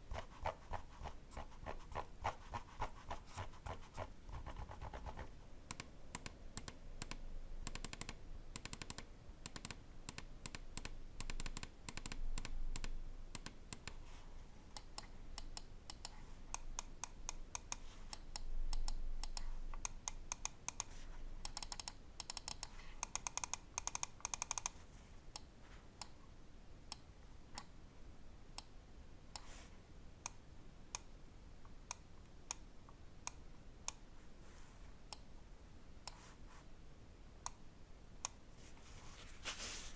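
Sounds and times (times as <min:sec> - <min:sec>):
computer mouse clicking: 0:04.4 - 0:14.0, 0:14.8 - 0:26.2.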